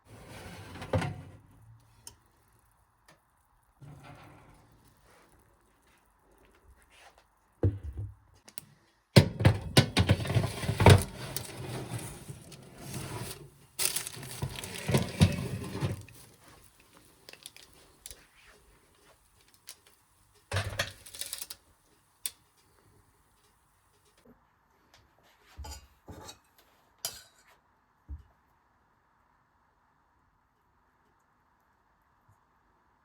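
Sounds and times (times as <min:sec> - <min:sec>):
packaging rustling and crinkling: 0:10.2 - 0:20.0, 0:20.8 - 0:21.6.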